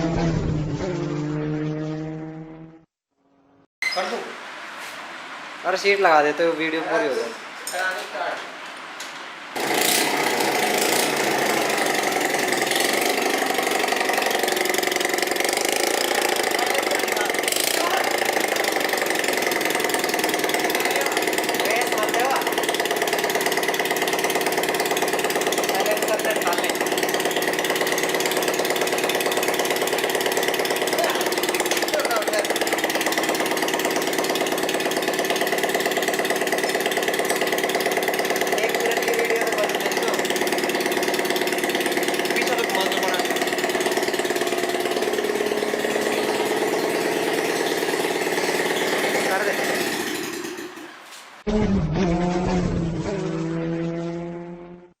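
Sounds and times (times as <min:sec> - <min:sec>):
motorcycle engine idling rattle: 0:09.6 - 0:51.0.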